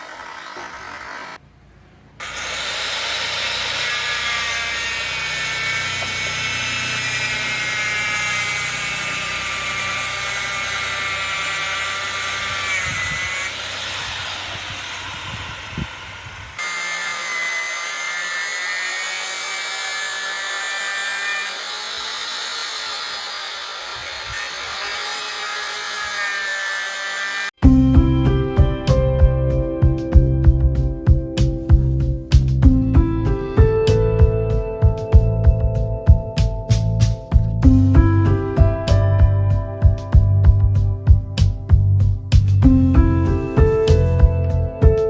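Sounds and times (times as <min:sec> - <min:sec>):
concrete saw cutting: 0:00.0 - 0:01.4, 0:02.2 - 0:27.6.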